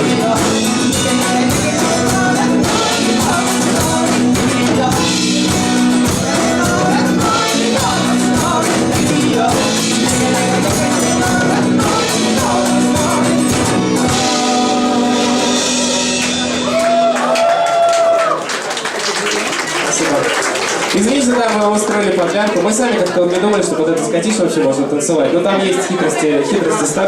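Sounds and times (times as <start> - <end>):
folk band singing and playing: 0.0 - 16.8
rhythmic beat: 0.0 - 17.4.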